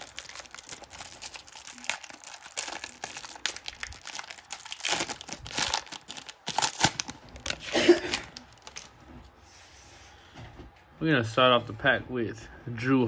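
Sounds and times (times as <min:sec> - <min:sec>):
cellophane wrapper crinkling: 0:00.0 - 0:09.0.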